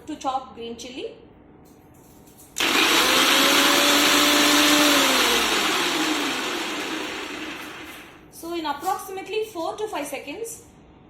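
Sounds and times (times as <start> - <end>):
mixer grinder motor whining: 2.6 - 8.2.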